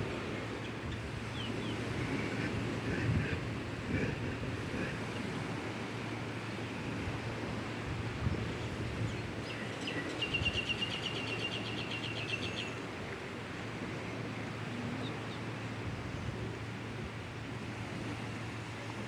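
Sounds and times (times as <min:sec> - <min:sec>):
surf: 0:00.0 - 0:11.8
wind: 0:00.0 - 0:19.0.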